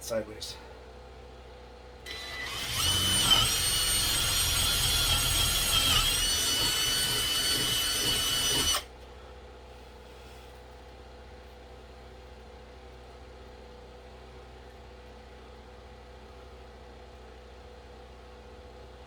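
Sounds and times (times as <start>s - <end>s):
power drill boring into wood: 2.1s - 8.9s.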